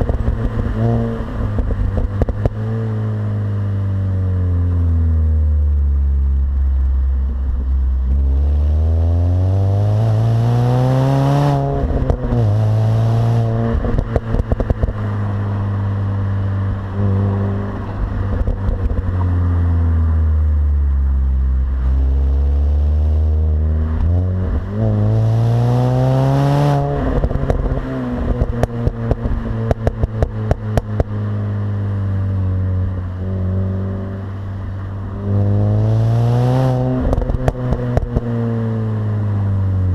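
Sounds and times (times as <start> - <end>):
exhaust crackles and pops: 0.0 - 2.7, 13.5 - 15.1, 18.1 - 19.4, 27.1 - 31.2, 37.0 - 38.3
car engine revving: 0.0 - 39.9.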